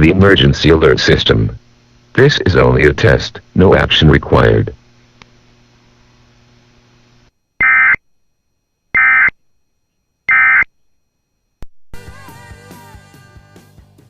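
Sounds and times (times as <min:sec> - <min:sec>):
faint steady hum: 0:00.0 - 0:13.6
buzzing digital tone bursts: 0:07.6 - 0:08.1, 0:08.9 - 0:09.4, 0:10.3 - 0:10.8.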